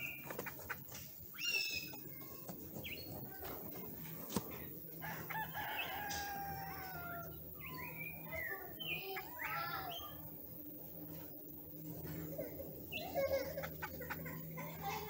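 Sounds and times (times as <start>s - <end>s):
bird chirping and whistling: 1.3s - 1.9s, 7.6s - 10.2s.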